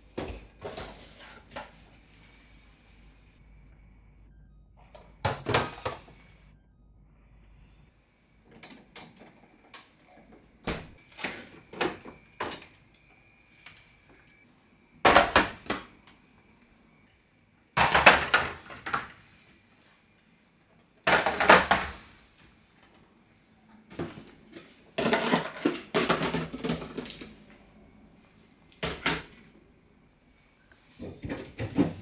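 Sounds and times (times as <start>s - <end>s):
refrigerator drawer sliding: 0.1s - 2.0s, 10.3s - 12.7s, 21.1s - 22.2s, 24.0s - 27.5s, 28.8s - 29.6s, 30.9s - 32.0s.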